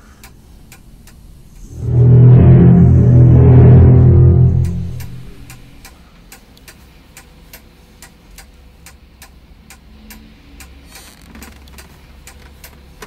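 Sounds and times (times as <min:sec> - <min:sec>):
low steady hum: 0:00.0 - 0:05.8.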